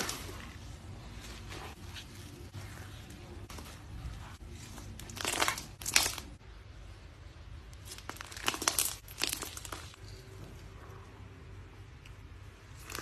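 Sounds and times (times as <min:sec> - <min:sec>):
crinkling crunching noise: 0:00.0 - 0:06.4, 0:07.7 - 0:10.3.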